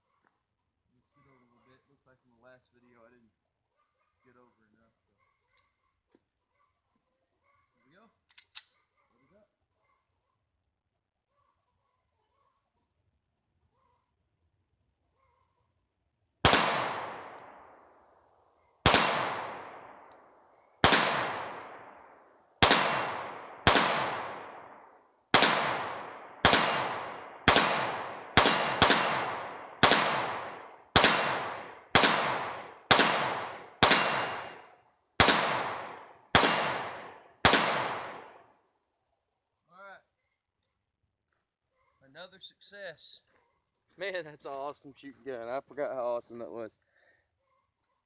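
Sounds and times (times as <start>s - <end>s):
pistol shots ringing out: 16.4s - 18.2s, 18.8s - 38.5s.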